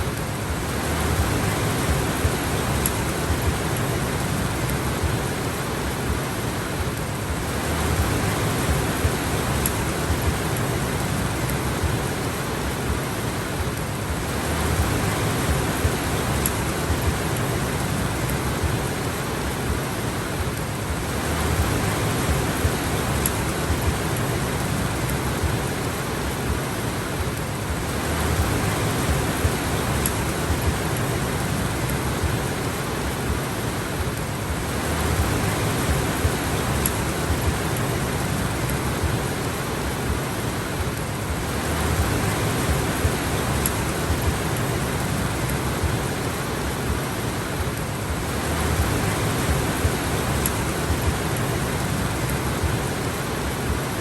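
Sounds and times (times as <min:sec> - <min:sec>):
heavy rain hiss: 0:00.0 - 0:54.0
raindrop ticks: 0:00.0 - 0:54.0.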